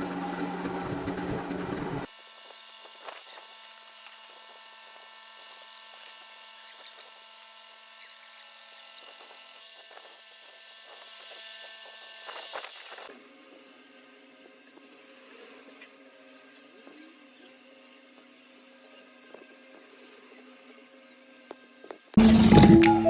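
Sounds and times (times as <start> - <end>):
compressor running loudly: 0.0 - 2.1.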